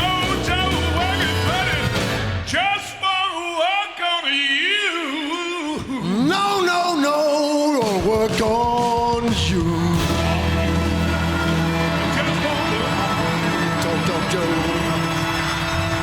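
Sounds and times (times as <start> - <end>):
bass guitar: 0.0 - 2.5, 8.2 - 16.0
man singing wordless vocal run: 0.0 - 15.8.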